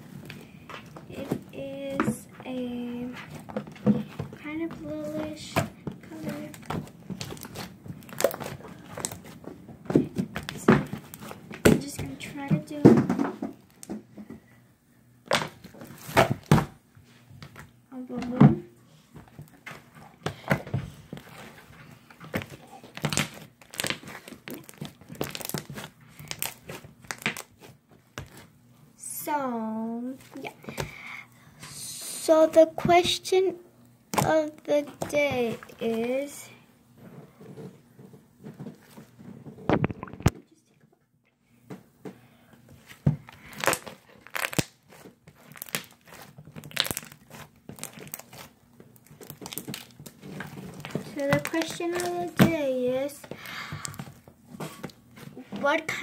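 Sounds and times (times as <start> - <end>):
slime crackling and popping: 4.9 - 9.2, 22.3 - 28.5, 43.3 - 55.0.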